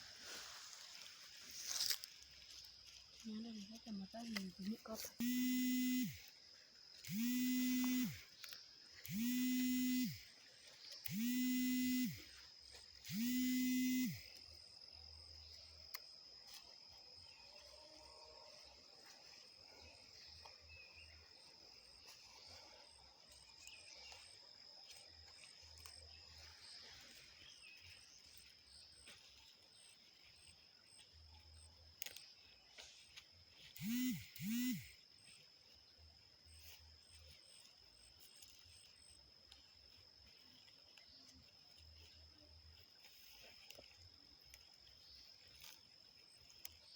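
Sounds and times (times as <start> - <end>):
insects trilling: 0.0 - 46.9
outdoor background noise: 0.0 - 46.9
loud buzzy pitched tones: 5.2 - 6.2.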